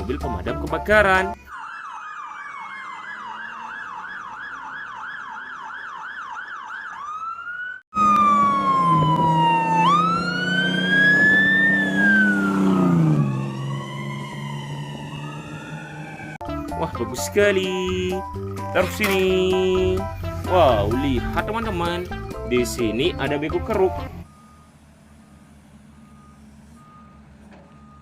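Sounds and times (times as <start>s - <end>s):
toy siren warbling and wailing: 1.2s - 16.4s.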